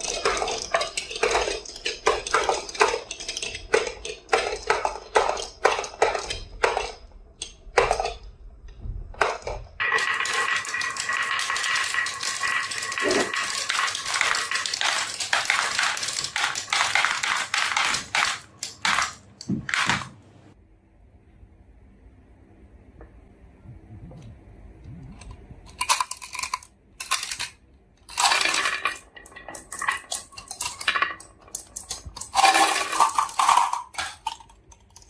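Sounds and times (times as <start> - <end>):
marbles clattering down a run: 0.0 - 7.0, 9.2 - 19.2, 28.1 - 34.7.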